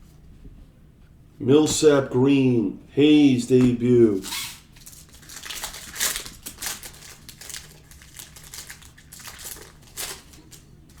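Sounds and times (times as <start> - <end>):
trading cards crinkling and rustling: 3.5 - 11.0.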